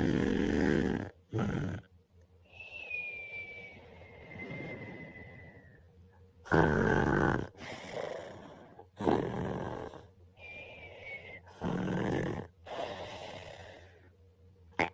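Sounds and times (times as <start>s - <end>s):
man snoring: 0.0s - 1.9s, 6.4s - 10.1s, 11.5s - 13.9s.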